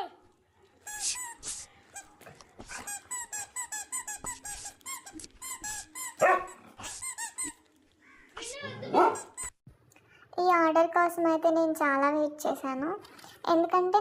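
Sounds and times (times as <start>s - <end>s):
squeaky dog toy squeaking: 2.8s - 6.3s, 6.9s - 7.6s, 9.0s - 9.6s.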